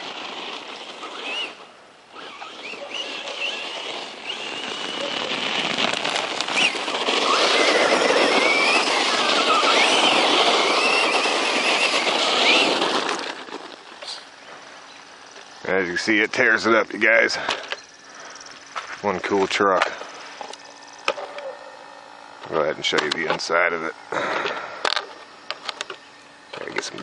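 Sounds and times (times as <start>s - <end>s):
tyres rushing: 0.0s - 14.8s
electric motor whining: 0.0s - 27.0s.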